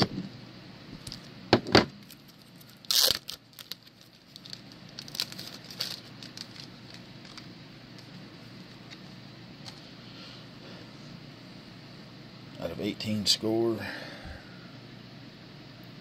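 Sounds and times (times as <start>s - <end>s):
packaging ripping: 2.0s - 9.1s
packaging crinkling: 2.0s - 9.9s.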